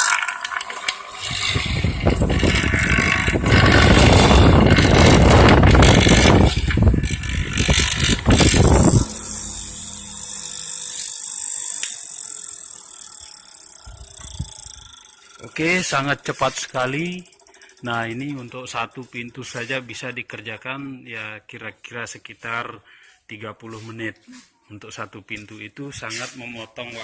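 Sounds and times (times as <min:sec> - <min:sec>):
mortising machine cutting wood: 0:01.1 - 0:11.9
motor humming spinning down: 0:01.2 - 0:14.9.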